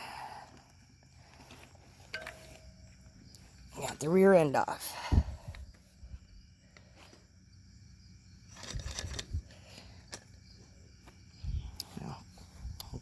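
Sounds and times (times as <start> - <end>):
tools and parts knocking: 2.1 - 2.8.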